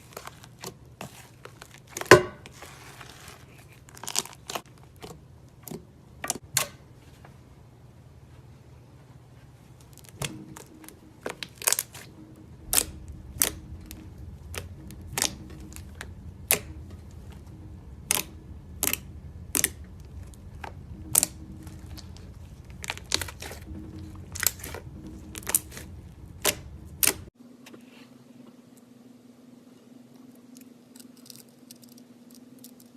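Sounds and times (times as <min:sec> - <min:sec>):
slime popping and clicking: 0:18.0 - 0:20.4.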